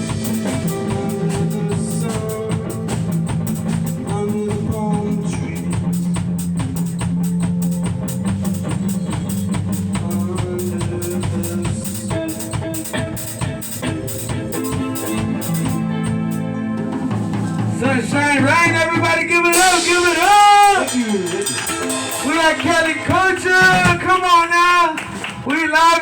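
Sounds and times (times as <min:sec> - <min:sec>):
person singing: 0:00.0 - 0:06.1, 0:10.0 - 0:15.9
bass notes: 0:00.0 - 0:24.8
drum kit beat: 0:00.0 - 0:25.5.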